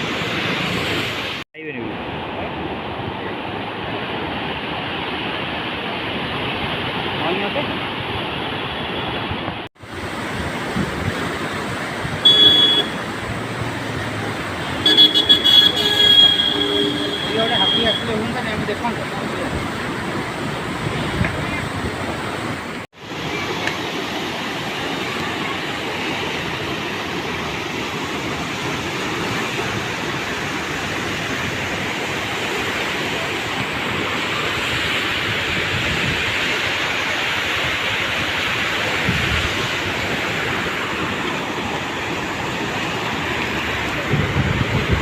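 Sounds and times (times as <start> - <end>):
rushing floodwater roar: 0.0 - 45.0
wind bumps on microphone: 10.0 - 11.4, 43.8 - 45.0.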